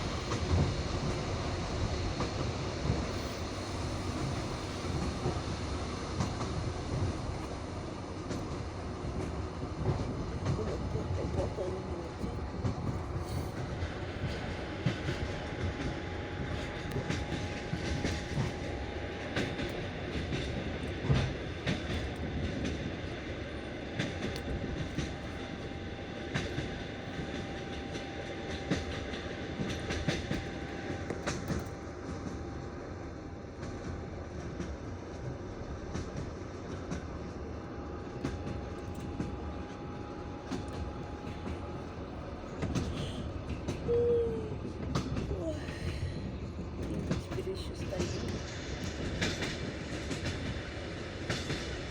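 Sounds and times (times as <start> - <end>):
train rumble: 0.0 - 51.9
wheels clicking over rail joints: 38.0 - 51.9.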